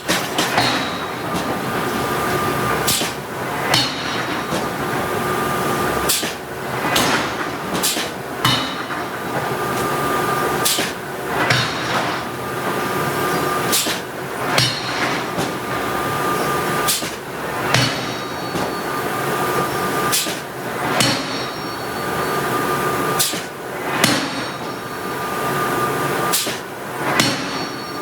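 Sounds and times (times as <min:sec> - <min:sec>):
forging hammer striking steel: 0:00.0 - 0:22.3, 0:23.2 - 0:25.0, 0:26.3 - 0:28.0
workshop noise: 0:00.0 - 0:28.0.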